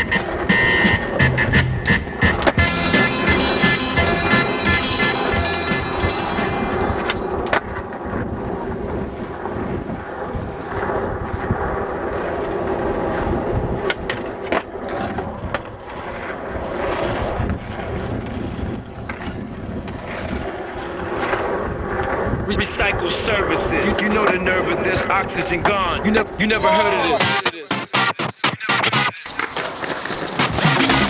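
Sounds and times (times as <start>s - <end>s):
skateboard clacking on ground: 0.0s - 9.5s, 13.8s - 22.2s, 28.9s - 31.0s
skateboard wheels rolling on pavement: 0.0s - 27.2s, 29.0s - 31.0s.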